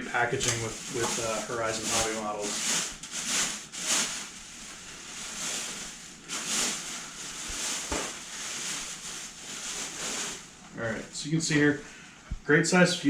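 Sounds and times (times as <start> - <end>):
packaging rustling: 0.3 - 10.6.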